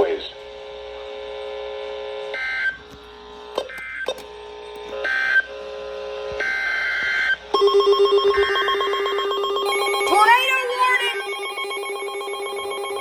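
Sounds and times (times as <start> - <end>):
harsh digital data bursts: 7.6 - 13.0.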